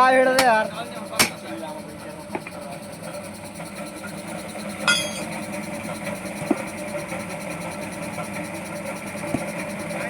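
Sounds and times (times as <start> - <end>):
metal tools clinking: 4.9 - 5.3.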